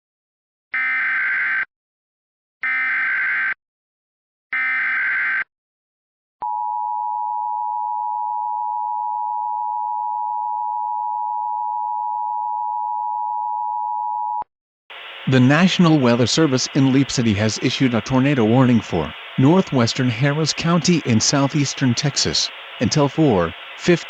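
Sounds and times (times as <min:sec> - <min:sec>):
digital data bursts: 0:14.9 - 0:24.0.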